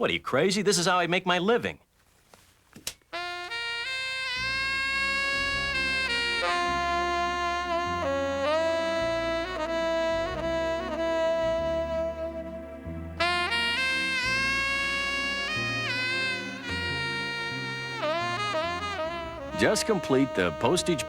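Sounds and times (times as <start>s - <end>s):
saxophone melody: 3.1s - 21.0s
bass line: 3.4s - 21.0s.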